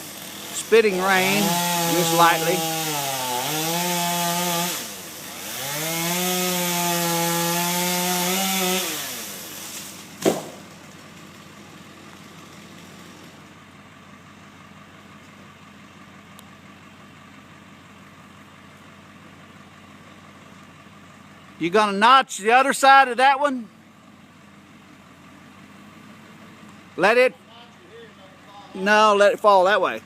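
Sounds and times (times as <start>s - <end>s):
chainsaw cutting wood: 0.0s - 13.6s
sharp knock: 10.2s - 10.6s.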